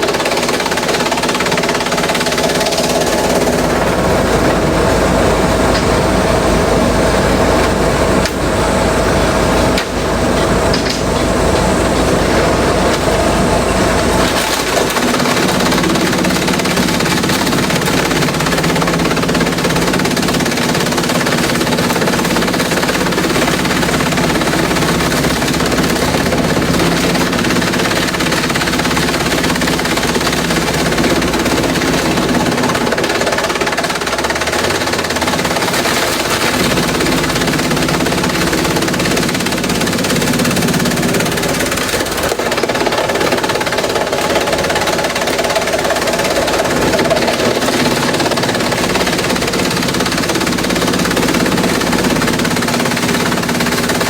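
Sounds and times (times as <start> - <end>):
shredder engine running: 0.0 - 54.0.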